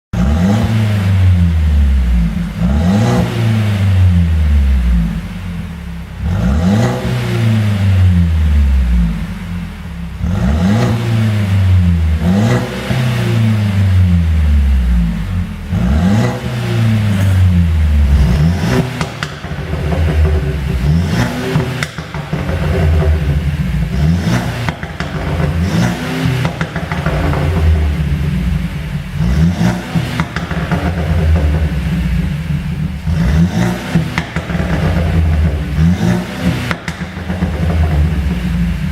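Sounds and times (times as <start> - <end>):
car engine revving: 0.1 - 38.9
exhaust pops and crackles: 11.9 - 38.9.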